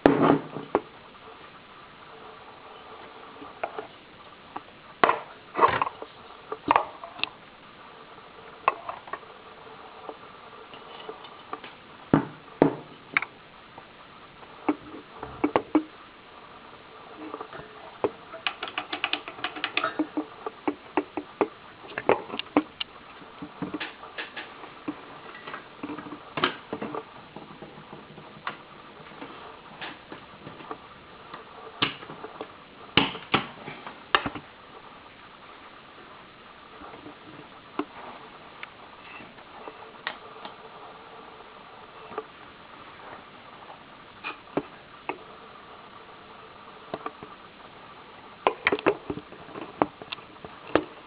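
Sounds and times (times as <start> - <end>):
small hard objects clicking: 18.4 - 22.9.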